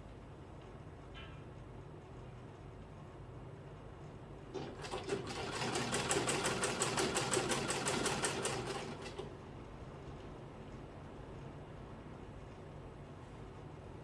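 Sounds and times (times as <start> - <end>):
sewing machine stitching: 4.6 - 9.3.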